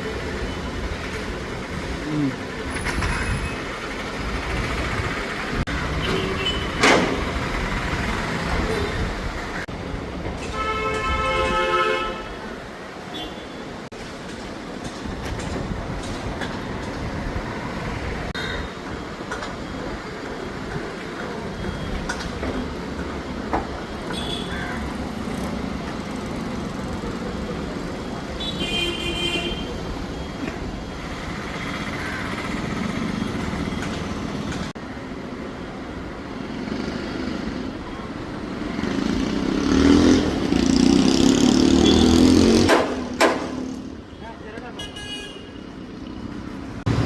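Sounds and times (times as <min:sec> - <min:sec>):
road traffic: 0:00.0 - 0:47.0
vehicle passing by: 0:38.5 - 0:43.0.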